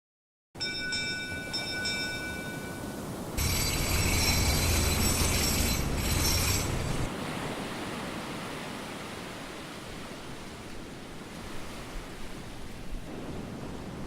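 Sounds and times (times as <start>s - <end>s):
bell ringing: 0.6s - 7.1s
high metallic ringing: 0.6s - 7.1s.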